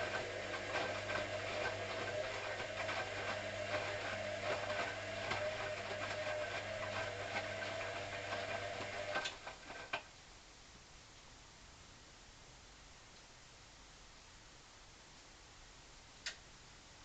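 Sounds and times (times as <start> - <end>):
washing machine motor hum: 0.0 - 10.0.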